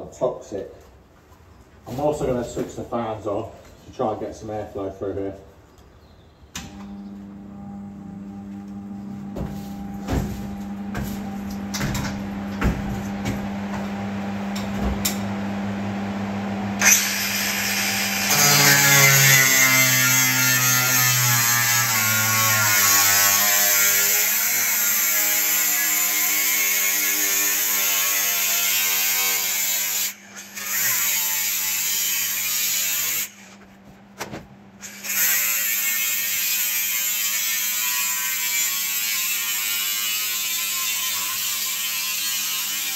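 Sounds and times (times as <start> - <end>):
power tool cutting metal: 16.8 - 33.5, 34.8 - 42.9.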